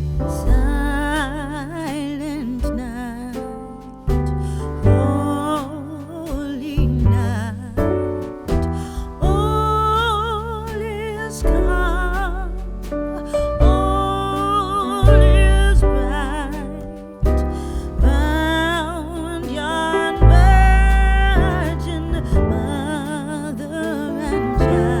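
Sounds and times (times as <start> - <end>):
deep bass notes: 0.0 - 25.0.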